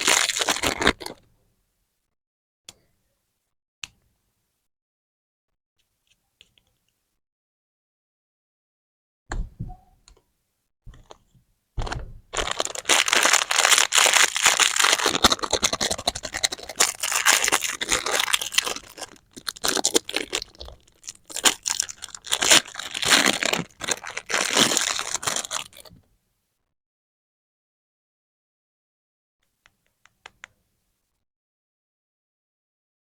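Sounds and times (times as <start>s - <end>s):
plastic wrapper crinkling and tearing: 0.0s - 1.2s, 11.8s - 25.9s.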